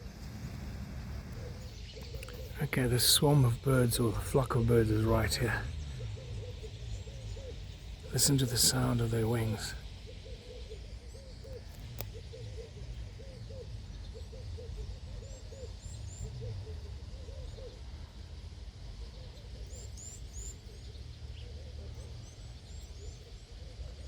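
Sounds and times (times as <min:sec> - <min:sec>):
steady low rumble: 0:00.0 - 0:10.2
birds hooting: 0:00.0 - 0:24.0.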